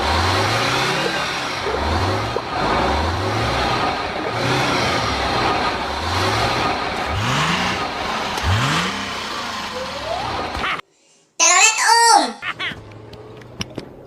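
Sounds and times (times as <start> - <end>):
vehicle engine revving: 0.0 - 10.8.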